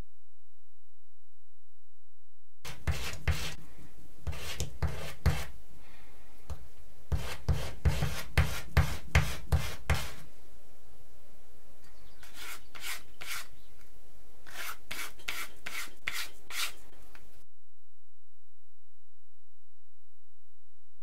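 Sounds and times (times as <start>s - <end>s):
rasp scraping on wood: 4.3s - 5.5s, 7.1s - 10.2s, 12.2s - 13.5s, 14.5s - 16.9s.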